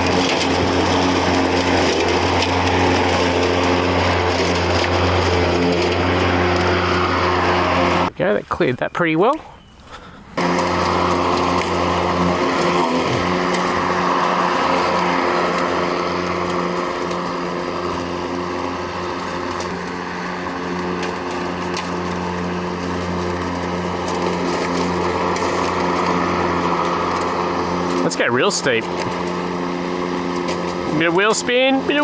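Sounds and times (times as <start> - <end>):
lawn mower cutting grass: 0.0 - 8.2, 10.0 - 32.0.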